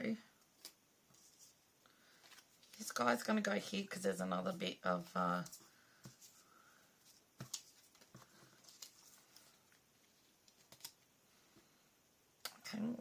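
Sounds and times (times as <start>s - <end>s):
paper cut-outs tapping and rustling: 7.4s - 9.5s.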